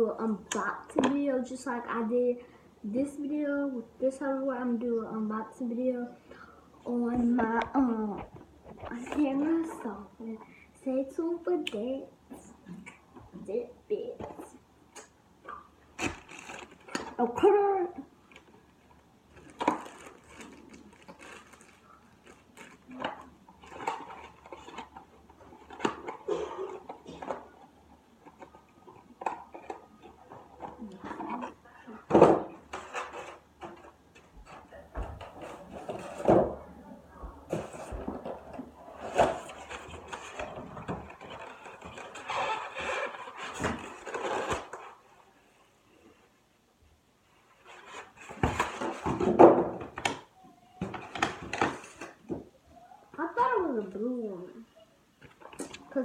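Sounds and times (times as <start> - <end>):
packaging rustling: 16.0 - 17.2, 18.2 - 31.6, 32.6 - 45.0.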